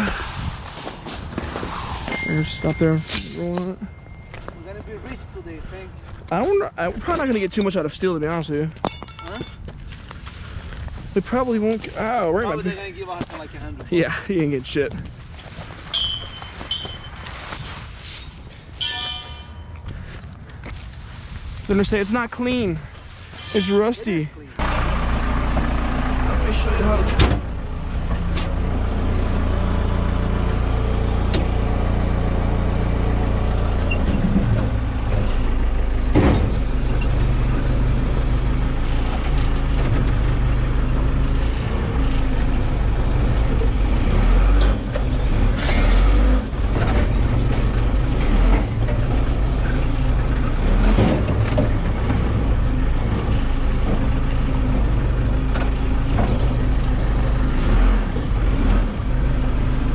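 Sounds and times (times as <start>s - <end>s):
sharp knocks and clanks: 8.8s - 9.7s, 15.9s - 20.1s, 46.7s - 54.2s
large diesel engine running: 23.6s - 59.9s.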